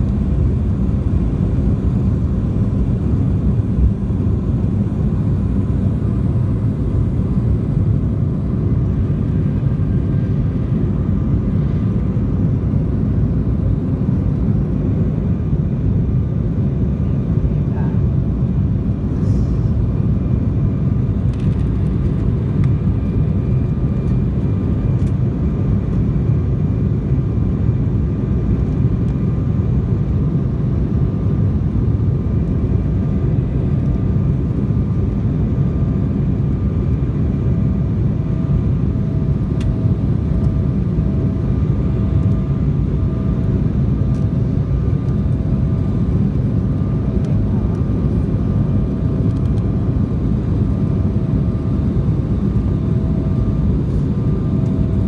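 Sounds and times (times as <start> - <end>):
faint jet engine whine: 0.0 - 55.0
jet cabin rumble: 0.0 - 55.0.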